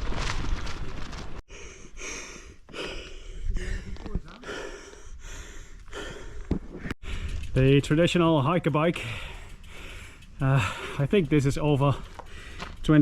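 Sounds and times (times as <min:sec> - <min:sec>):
man breathing hard: 0:01.5 - 0:07.5, 0:09.0 - 0:11.0, 0:12.0 - 0:12.8
rush of wind: 0:06.4 - 0:08.2.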